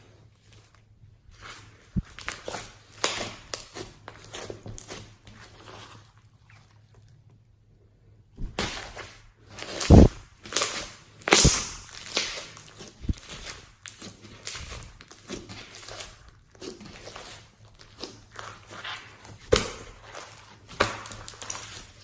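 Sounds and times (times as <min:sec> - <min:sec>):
slime squished by hand: 0:08.4 - 0:22.0
heavy thud: 0:09.9 - 0:10.1.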